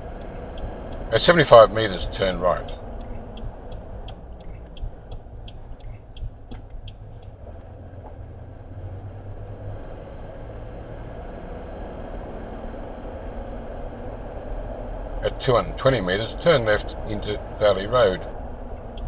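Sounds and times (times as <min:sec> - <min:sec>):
turn indicator ticking: 0:00.0 - 0:08.5, 0:14.4 - 0:19.0
car engine and road noise: 0:00.0 - 0:19.0.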